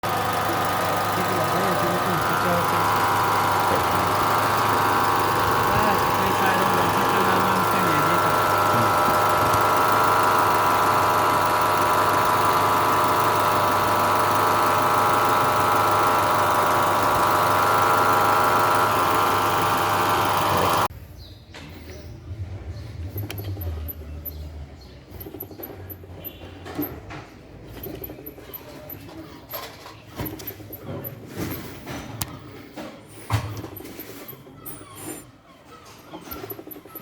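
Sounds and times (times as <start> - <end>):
alternator whine-grinding: 0.0 - 20.9
car engine running: 0.0 - 20.9.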